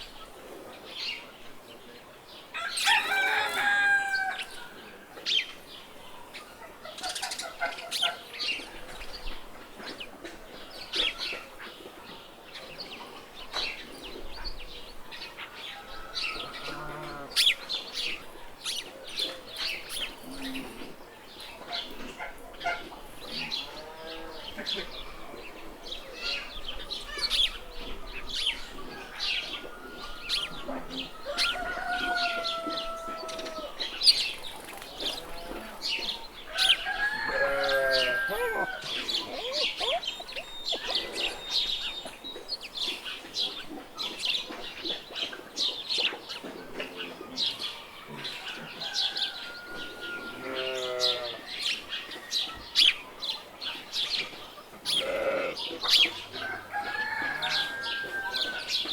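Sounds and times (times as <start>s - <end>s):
small birds chirping: 0.0s - 58.9s
chickens clucking: 4.4s - 58.9s
long drawn-out calls: 36.5s - 42.0s.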